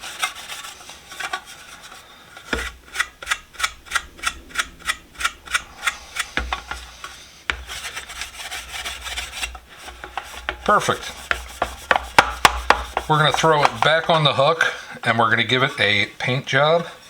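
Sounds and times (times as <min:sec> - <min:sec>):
rubbing metal box: 0:00.0 - 0:17.0
box being handled knocks: 0:11.4 - 0:14.2.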